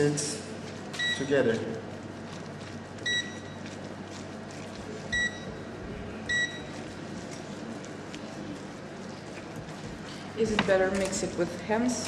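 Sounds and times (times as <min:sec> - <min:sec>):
short electronic beeps: 0:03.1 - 0:03.6, 0:06.3 - 0:06.7.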